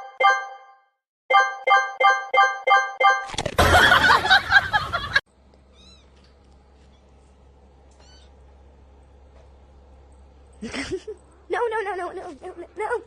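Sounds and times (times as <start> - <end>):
faint low hum: 4.0 - 13.0.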